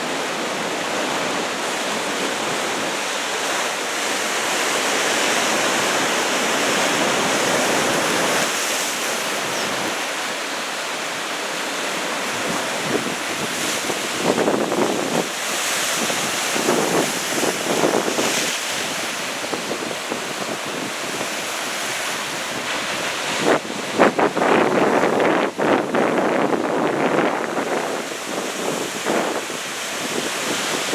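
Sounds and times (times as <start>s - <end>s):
ocean surf breaking: 0.0s - 30.9s
wind buffeting microphone: 12.3s - 21.6s, 22.2s - 30.9s.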